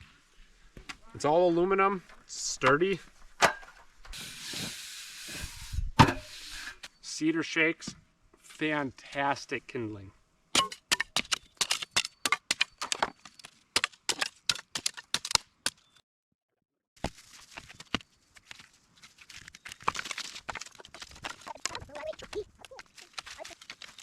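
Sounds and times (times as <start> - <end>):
rustling with light clicks: 17.5 - 24.0
wood cracking and snapping: 19.3 - 24.0.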